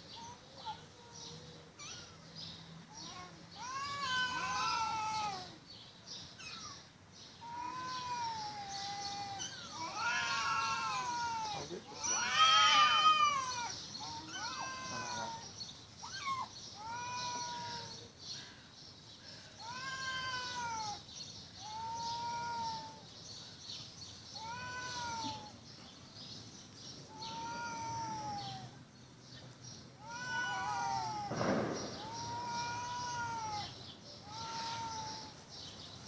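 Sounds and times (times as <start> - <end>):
cats yowling: 1.8 - 2.2, 2.9 - 5.6, 7.4 - 18.0, 19.6 - 21.0, 21.6 - 23.0, 24.4 - 25.6, 27.1 - 28.8, 30.0 - 31.4, 32.0 - 35.4.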